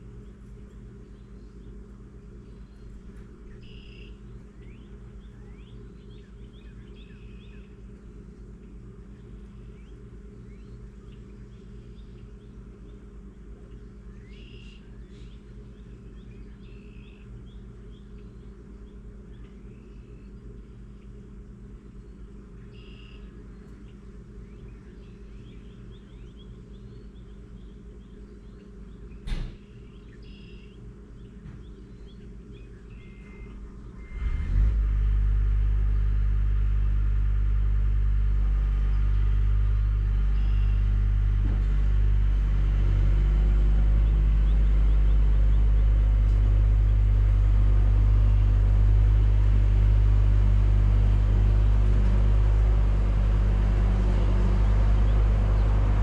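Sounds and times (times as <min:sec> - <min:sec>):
engine running with low hum: 0:00.0 - 0:56.0
faint bird chirps: 0:00.7 - 0:08.0, 0:08.7 - 0:21.2, 0:22.0 - 0:34.4, 0:38.8 - 0:41.0.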